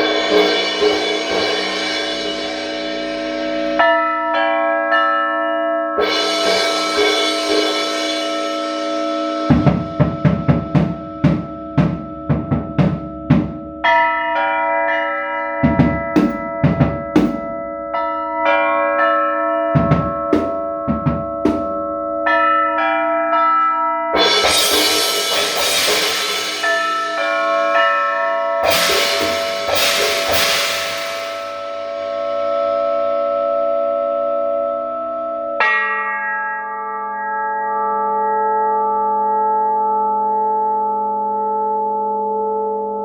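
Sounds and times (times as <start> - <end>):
drum hits: 0.0 - 3.2, 9.5 - 13.9, 15.6 - 17.6, 19.8 - 21.9, 24.2 - 27.2, 28.6 - 31.7
crashing cymbal wash: 0.0 - 3.8, 6.0 - 11.6, 24.2 - 27.8, 28.6 - 32.4
struck bell tones: 0.0 - 5.0, 6.0 - 23.5.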